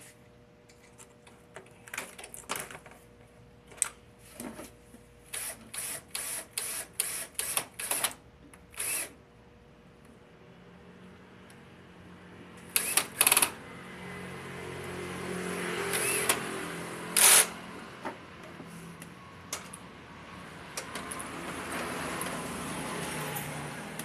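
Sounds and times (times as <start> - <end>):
electric drill boring into wood: 5.4 - 8.2, 8.8 - 9.1, 12.7 - 13.6, 15.9 - 16.4, 17.1 - 17.6.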